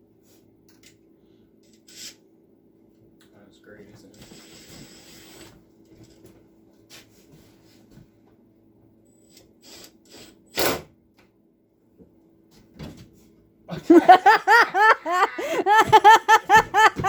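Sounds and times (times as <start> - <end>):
person laughing: 13.7 - 17.0.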